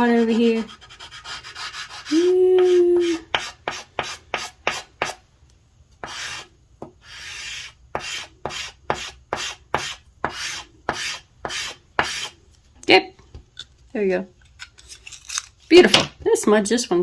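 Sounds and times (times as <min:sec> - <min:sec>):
charcoal scratching on paper: 0:00.0 - 0:05.2, 0:06.0 - 0:12.4.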